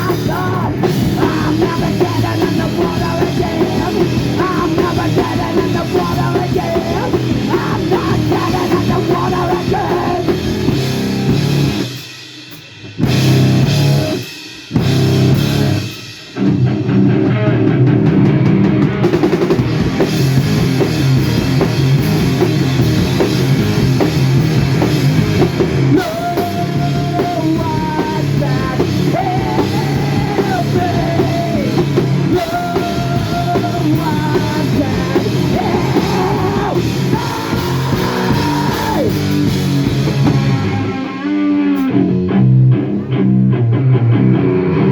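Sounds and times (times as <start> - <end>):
heavy rock band playing: 0.0 - 44.9
lead guitar line: 13.0 - 44.9.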